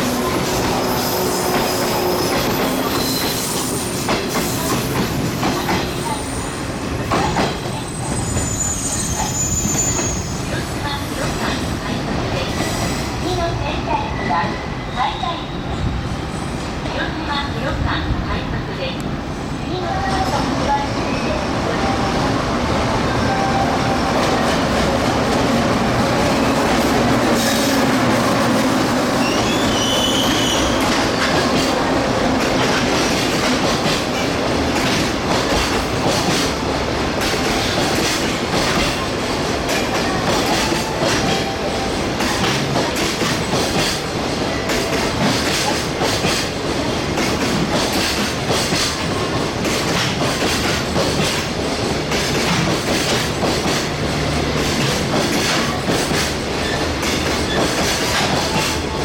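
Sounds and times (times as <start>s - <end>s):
train rumbling: 0.0s - 59.0s
high wheel squeal: 0.3s - 3.9s, 7.7s - 11.0s, 29.2s - 31.2s
wheels clacking over rail joints: 24.5s - 59.0s.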